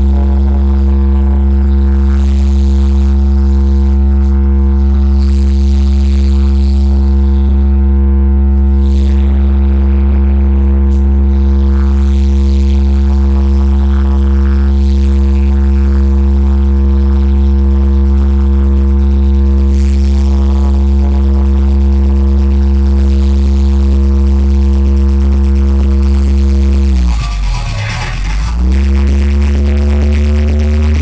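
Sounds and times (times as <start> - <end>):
loud low bass tone: 0.0 - 31.0.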